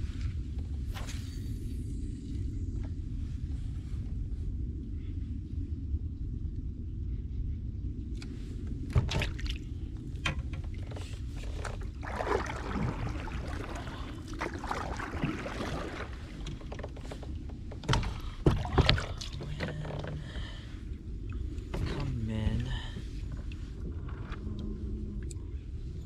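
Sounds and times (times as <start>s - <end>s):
steady low rumble: 0.0s - 26.0s
water washing: 10.9s - 20.6s.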